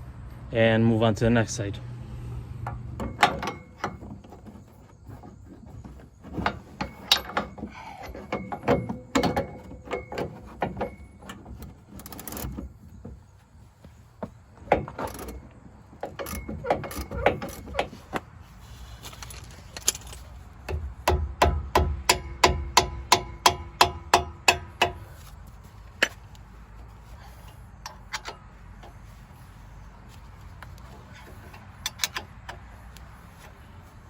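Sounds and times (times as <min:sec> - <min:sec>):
metal tools clinking and knocking: 0:02.7 - 0:13.2, 0:14.6 - 0:18.2, 0:18.9 - 0:20.9, 0:27.1 - 0:29.4, 0:30.6 - 0:32.9.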